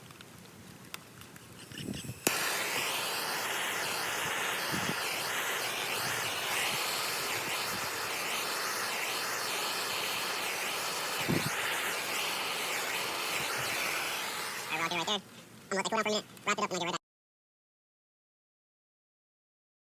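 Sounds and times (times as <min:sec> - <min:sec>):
torch igniting click: 0:00.0 - 0:15.0
torch flame hissing: 0:00.9 - 0:15.3.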